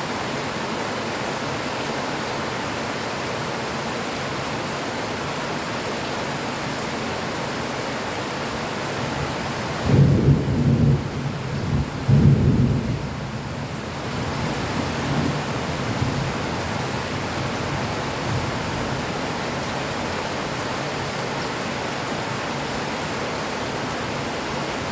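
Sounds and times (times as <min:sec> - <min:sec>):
rain falling steadily: 0:00.0 - 0:24.9
low rumble of thunder: 0:09.8 - 0:19.1.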